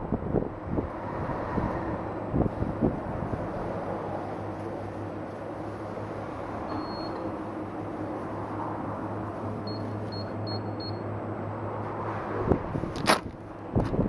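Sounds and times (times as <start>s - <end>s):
low machine hum: 0.0s - 13.8s
electronic beeps: 6.7s - 7.2s, 9.6s - 11.0s.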